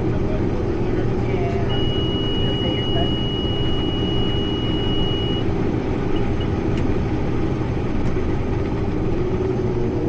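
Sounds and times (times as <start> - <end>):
combine harvester droning: 0.0 - 10.0
high-pitched buzzer tone: 1.7 - 5.5.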